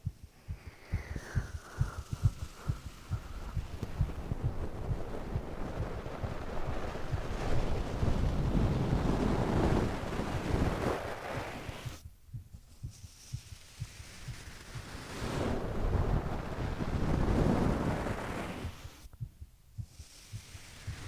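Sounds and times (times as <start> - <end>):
person breathing slowly: 0.0 - 6.4, 19.8 - 21.0
low heartbeat: 0.0 - 21.0.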